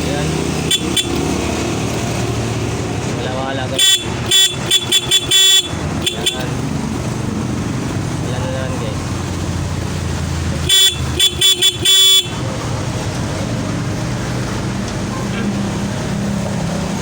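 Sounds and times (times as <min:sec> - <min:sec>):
scooter horn honking: 0:00.6 - 0:01.4, 0:03.8 - 0:06.6, 0:10.6 - 0:12.6.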